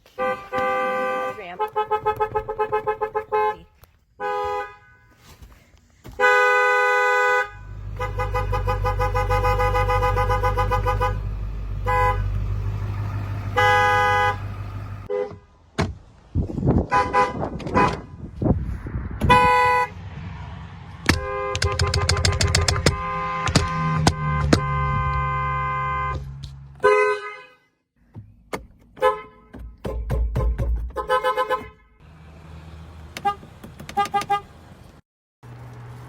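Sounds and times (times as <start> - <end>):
two-note car horns honking: 0.2 - 5.3, 6.2 - 15.4, 21.2 - 27.6, 29.0 - 32.0.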